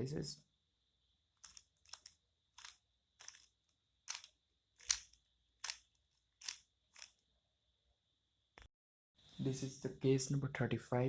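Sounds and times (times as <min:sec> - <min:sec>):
puzzle cube plastic clicks: 0:01.4 - 0:07.2.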